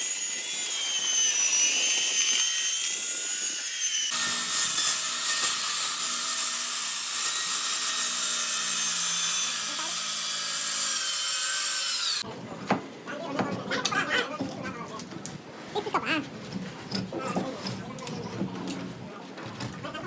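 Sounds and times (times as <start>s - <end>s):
concrete cutting machine whine: 0.0s - 12.2s.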